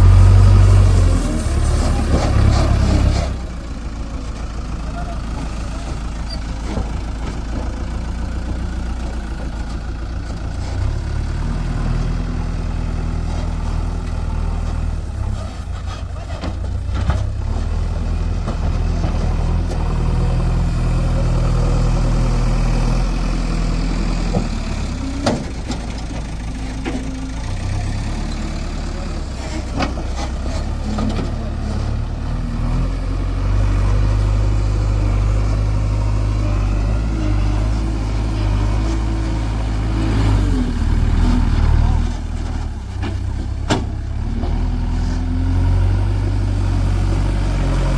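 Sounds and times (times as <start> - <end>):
diesel engine running: 0.0 - 47.9.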